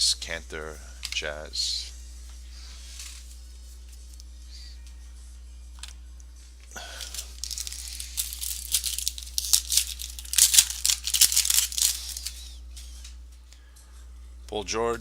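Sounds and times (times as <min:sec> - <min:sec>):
wrapper tearing and crinkling: 0:06.8 - 0:12.5.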